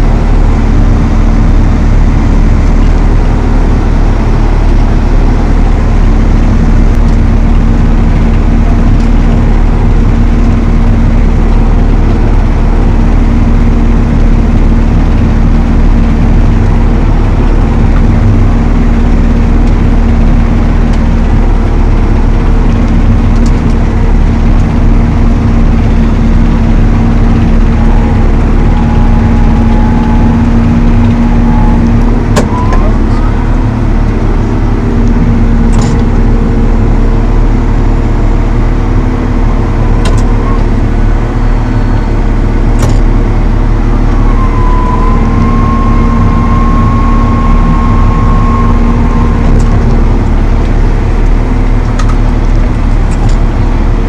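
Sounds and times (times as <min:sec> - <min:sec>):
tractor engine running under load: 0:00.0 - 0:54.0.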